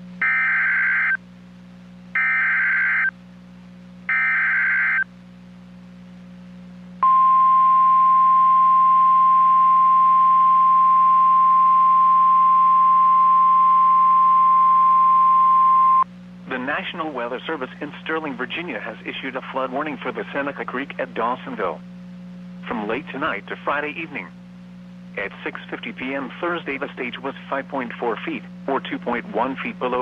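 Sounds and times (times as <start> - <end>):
screechy digital data bursts: 0.2 - 1.2, 2.2 - 3.1, 4.1 - 5.0
steady warning alarm tone: 0.2 - 1.2, 2.2 - 3.1, 4.1 - 5.1, 7.0 - 16.0.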